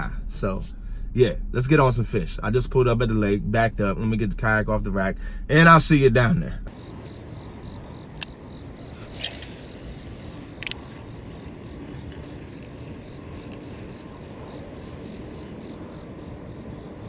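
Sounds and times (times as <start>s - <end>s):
low rumbling noise: 0.0s - 17.0s
sharp clicks: 8.2s - 11.1s.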